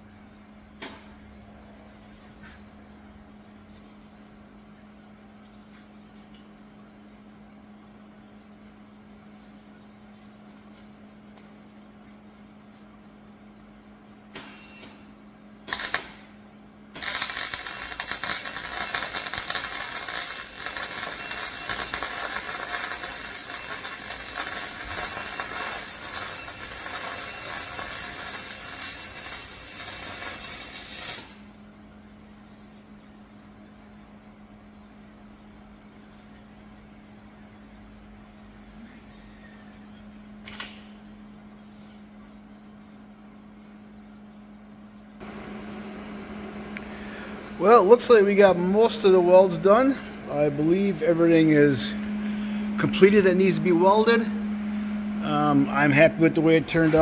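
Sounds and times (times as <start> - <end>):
faint steady hum: 3.2 - 57.0
welding arc crackling: 15.7 - 16.2, 17.0 - 31.5, 45.2 - 54.4, 55.2 - 57.0.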